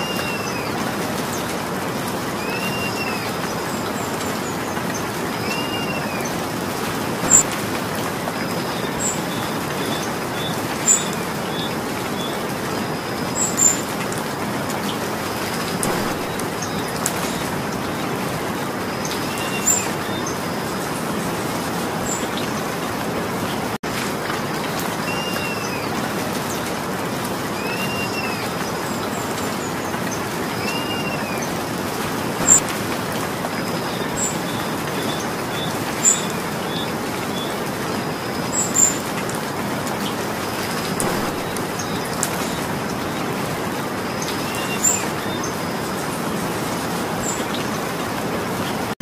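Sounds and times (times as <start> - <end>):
bird call: 0.0 - 0.8, 2.4 - 3.6, 5.4 - 6.4, 7.2 - 7.6, 15.7 - 17.5, 27.6 - 28.6, 30.6 - 31.6, 32.4 - 32.7, 40.8 - 42.7
steady rain falling: 0.0 - 49.0
water drips tapping: 6.8 - 8.2, 13.4 - 17.8, 32.4 - 33.3, 38.7 - 43.2.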